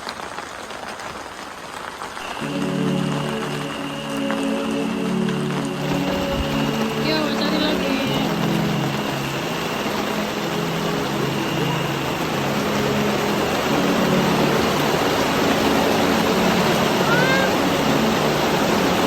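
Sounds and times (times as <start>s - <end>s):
steady rushing outdoor noise: 1.2s - 19.0s
faint voices: 2.3s - 9.4s, 11.6s - 19.0s.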